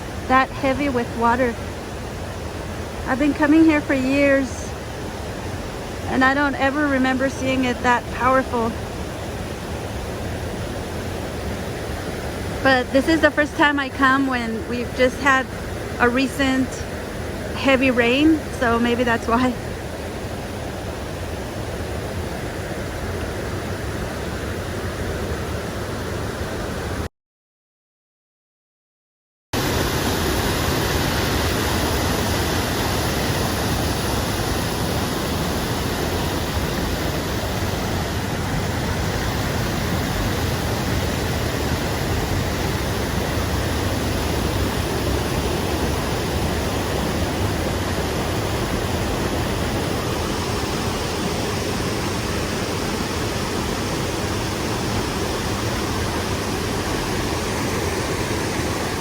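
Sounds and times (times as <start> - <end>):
creek water rushing over rocks: 0.0 - 27.0, 29.6 - 59.0.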